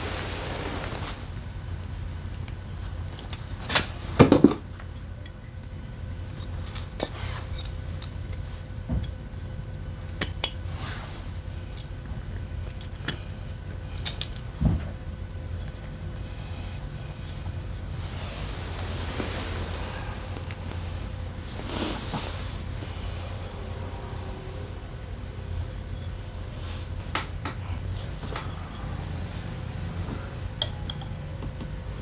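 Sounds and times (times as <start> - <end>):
steady low hum: 0.0 - 32.0
metal tools clinking: 16.6 - 20.0.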